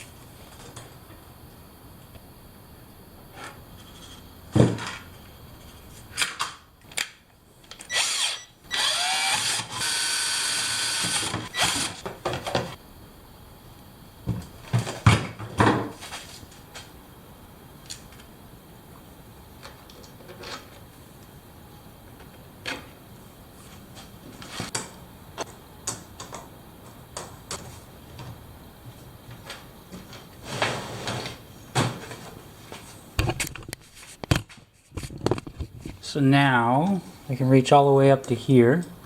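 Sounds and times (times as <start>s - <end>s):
power drill whining: 7.8s - 12.1s.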